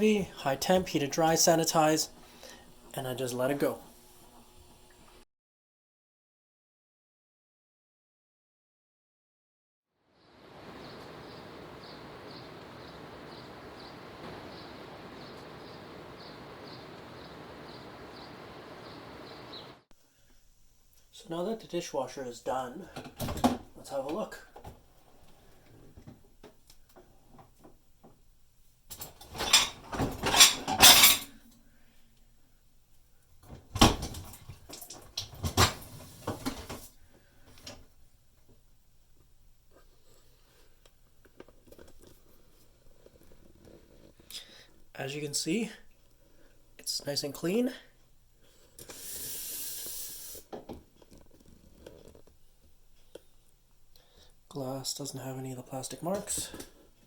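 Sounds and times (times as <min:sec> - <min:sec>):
dishwasher rushing noise: 0:29.1 - 0:31.3.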